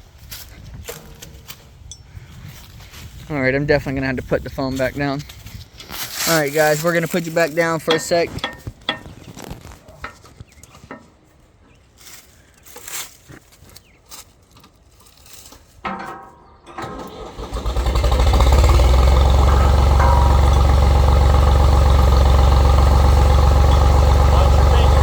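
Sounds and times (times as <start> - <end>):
tractor engine cranking and running: 5.3 - 11.2, 15.2 - 25.0.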